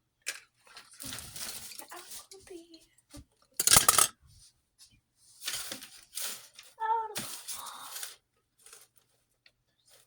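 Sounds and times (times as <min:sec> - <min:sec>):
desk items rustling and scraping: 0:03.6 - 0:04.1.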